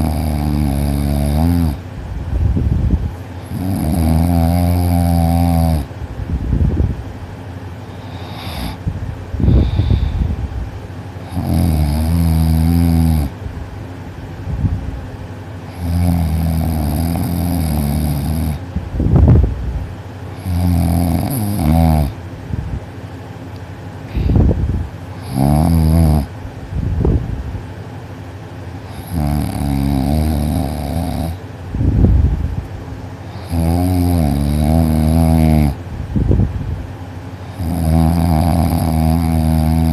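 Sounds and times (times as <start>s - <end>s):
person snoring loudly: 0.0s - 1.8s, 3.4s - 5.9s, 8.0s - 8.8s, 9.4s - 10.4s, 11.2s - 13.3s, 15.7s - 18.6s, 20.4s - 22.2s, 25.2s - 26.3s, 28.9s - 31.4s, 33.3s - 35.8s, 37.5s - 39.9s
short noisy breaths: 7.8s - 10.8s, 24.0s - 24.6s.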